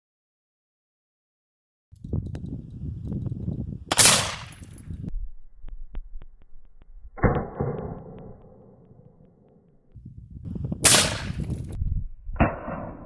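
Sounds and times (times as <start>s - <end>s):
low rumble: 2.0s - 13.0s
gunshots with echo: 3.9s - 4.8s, 10.8s - 11.8s.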